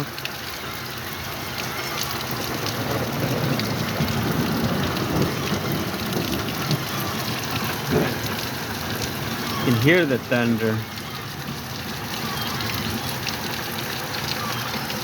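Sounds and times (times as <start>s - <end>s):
heavy rain pouring: 0.0s - 15.0s
water drips ticking: 0.0s - 15.0s
thunder rumbling: 2.1s - 13.5s.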